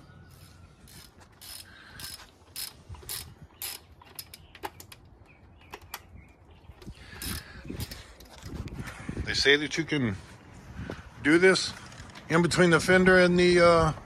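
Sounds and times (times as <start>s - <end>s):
socket ratchet clicking: 0.9s - 5.0s, 7.2s - 8.0s.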